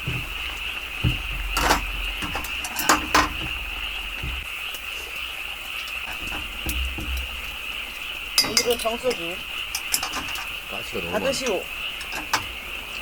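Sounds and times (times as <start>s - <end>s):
insects chirping: 0.0s - 13.0s
tableware clinking: 6.1s - 10.5s.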